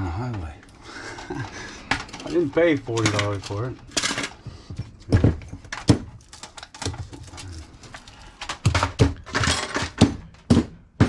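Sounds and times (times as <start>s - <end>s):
scrap metal knocking and clattering: 8.4s - 10.5s.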